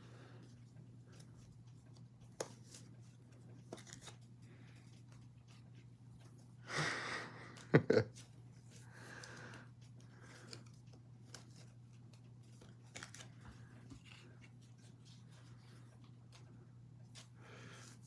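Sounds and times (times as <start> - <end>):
cards sliding rustle: 2.3 - 5.3, 8.2 - 18.0
cards clicking: 12.6 - 13.5.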